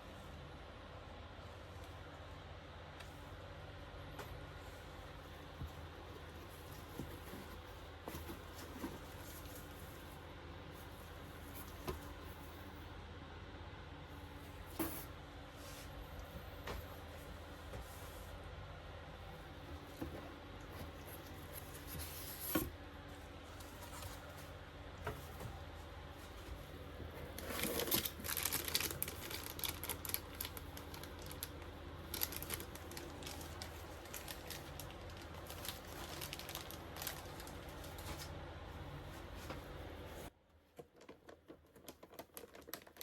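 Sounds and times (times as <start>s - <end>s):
packaging rustling and crinkling: 27.2s - 38.4s, 40.8s - 43.0s.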